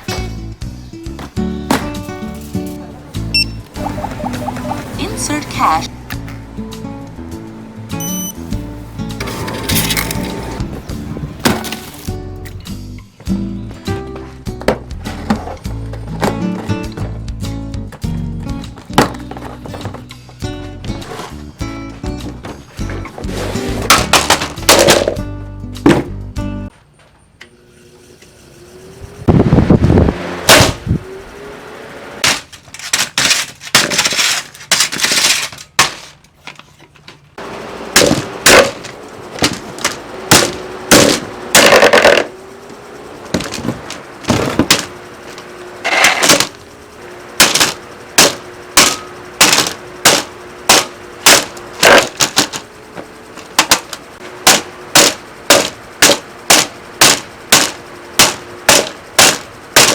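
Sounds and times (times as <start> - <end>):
fan motor hum: 0.0 - 35.6, 36.2 - 59.9
sharp hits on a fan: 30.5 - 30.9, 37.9 - 42.1, 47.4 - 52.7, 53.5 - 59.9.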